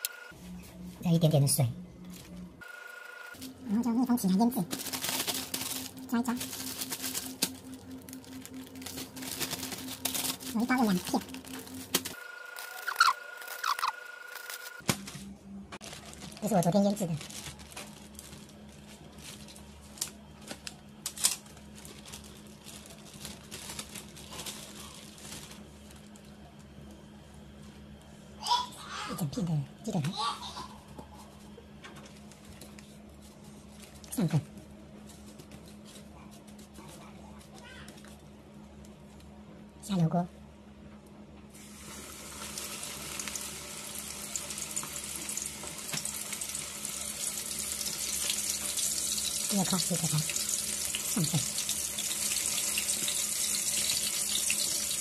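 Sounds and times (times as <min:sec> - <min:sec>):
plastic bag crinkling: 0:03.4 - 0:15.2, 0:15.8 - 0:26.3
chicken sizzling in hot oil: 0:41.6 - 0:55.0.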